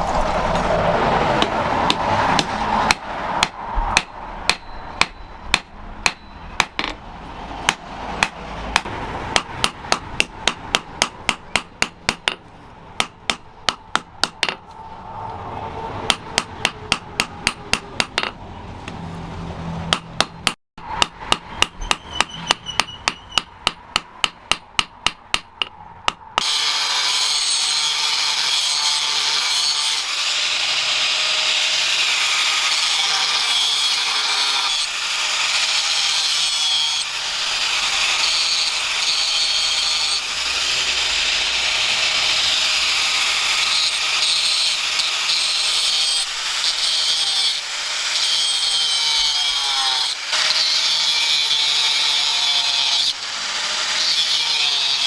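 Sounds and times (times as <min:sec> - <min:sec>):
hammer striking steel: 0:01.4 - 0:07.0, 0:07.6 - 0:14.8, 0:16.0 - 0:19.0, 0:19.9 - 0:30.0.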